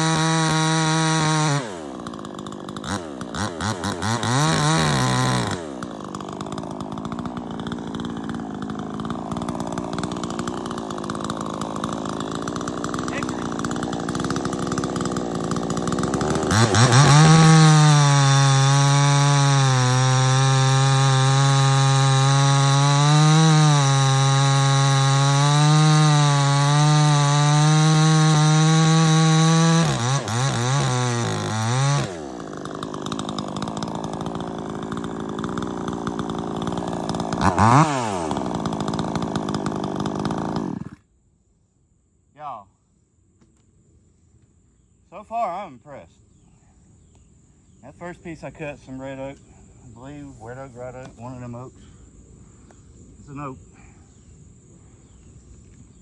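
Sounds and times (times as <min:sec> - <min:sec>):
chainsaw cutting at full throttle: 0:00.0 - 0:41.0.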